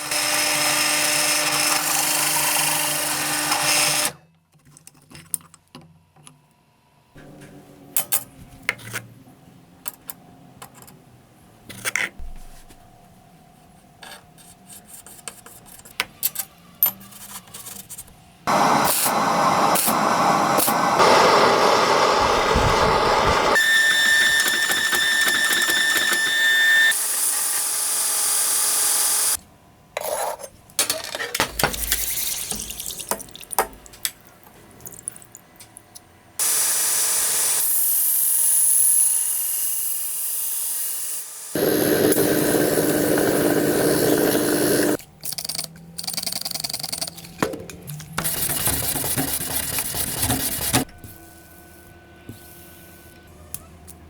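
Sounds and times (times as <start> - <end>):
machine high whine: 18.5 - 27.0, 41.6 - 45.0.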